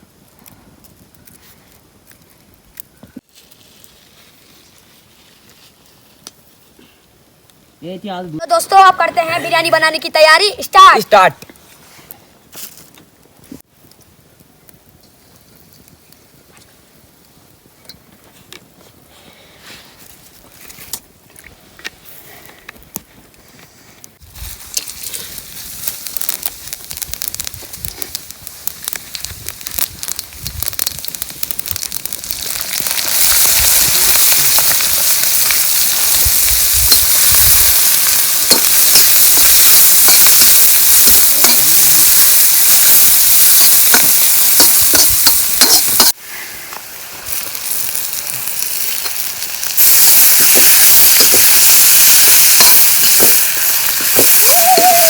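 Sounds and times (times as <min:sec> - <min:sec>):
food frying in hot oil: 0:25.0 - 0:46.2, 0:46.9 - 0:55.0
stirring clicks and scrapes: 0:43.9 - 0:46.2.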